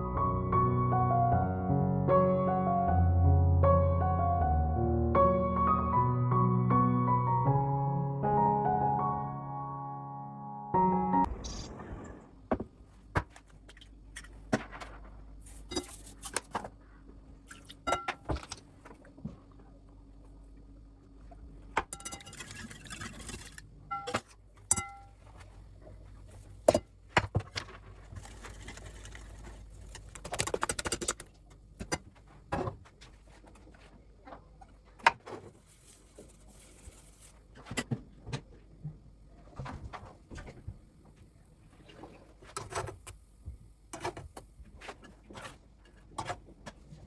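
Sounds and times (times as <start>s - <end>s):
objects clicking and clattering: 21.8s - 25.1s, 26.7s - 33.9s.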